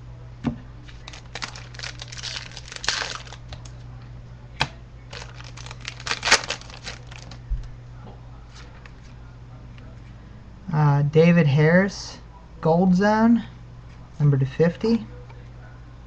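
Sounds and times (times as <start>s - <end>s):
card pack wrapper crinkling and tearing: 0.9s - 3.7s, 5.1s - 7.4s.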